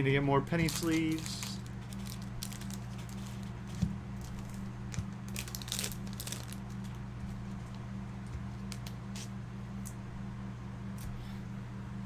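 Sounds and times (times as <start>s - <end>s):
low electrical hum: 0.0s - 12.0s
foil wrappers and cards rustling: 0.5s - 7.8s, 8.5s - 9.3s.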